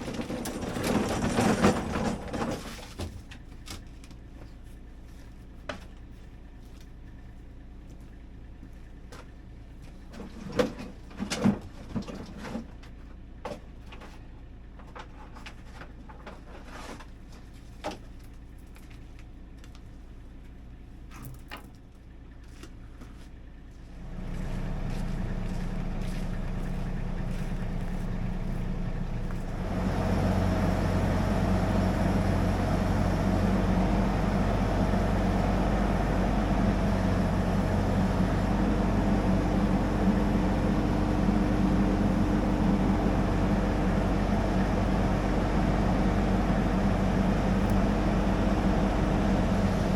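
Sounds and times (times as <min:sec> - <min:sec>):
knocks and clatter: 0:00.0 - 0:03.9
engine running: 0:00.0 - 0:49.9.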